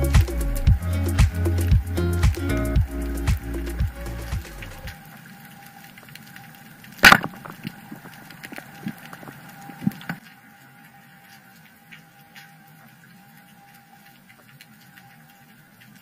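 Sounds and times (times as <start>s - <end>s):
background music: 0.0s - 5.0s
faint clicking and crackling: 0.0s - 16.0s
speargun firing underwater: 7.0s - 8.1s
small knocks: 7.0s - 10.2s.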